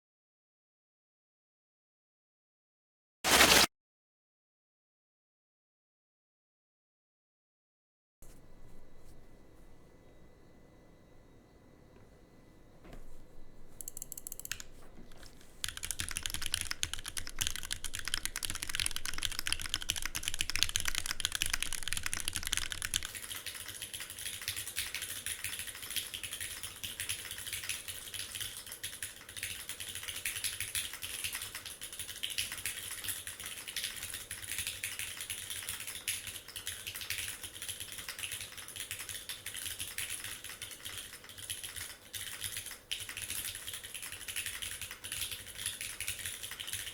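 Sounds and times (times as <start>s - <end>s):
mechanical keyboard typing: 13.8s - 46.9s.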